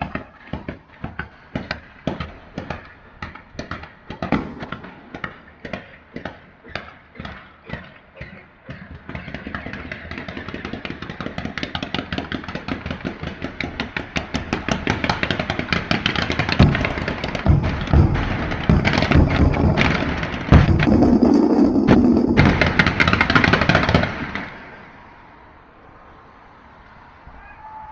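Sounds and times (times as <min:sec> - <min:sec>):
fireworks bangs and crackle: 0:03.6 - 0:07.3, 0:09.1 - 0:24.8.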